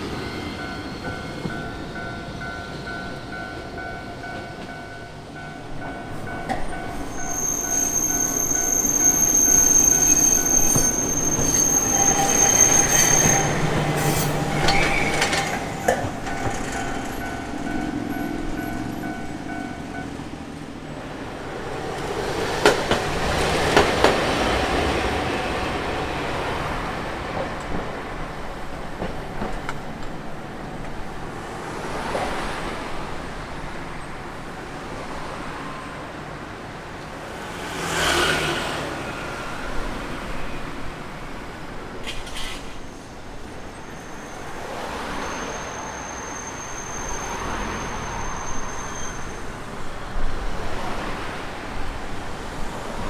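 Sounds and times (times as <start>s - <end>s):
tram wheels clicking over rail joints: 0.0s - 33.3s, 41.7s - 45.9s
street traffic noise: 0.0s - 53.0s.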